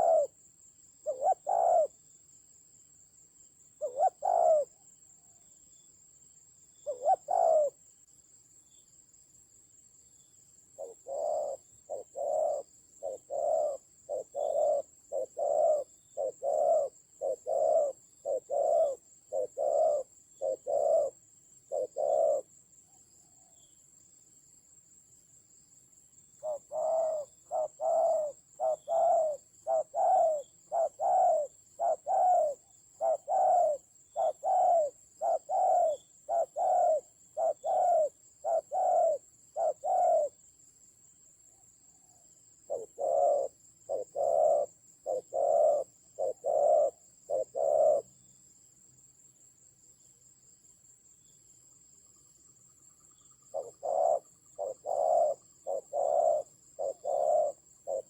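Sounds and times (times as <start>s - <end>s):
dove cooing: 0.0s - 0.4s, 1.0s - 2.0s, 3.8s - 5.4s, 6.8s - 7.8s, 10.8s - 22.5s, 26.4s - 40.4s, 41.9s - 48.2s, 53.4s - 58.0s.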